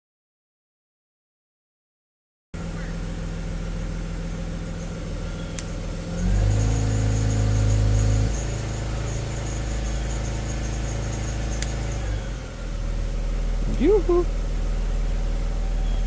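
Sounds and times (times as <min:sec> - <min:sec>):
car engine revving and idling: 0:02.6 - 0:16.0.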